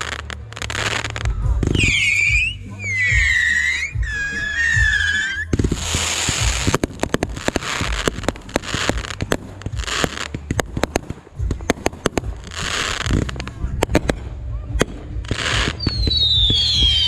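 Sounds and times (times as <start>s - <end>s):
firework whistling: 0.0s - 11.2s, 15.3s - 17.0s
fireworks crackling: 0.0s - 17.0s.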